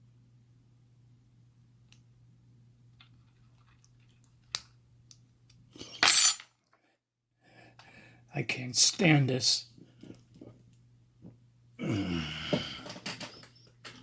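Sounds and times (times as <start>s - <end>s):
low steady hum: 0.0s - 6.4s.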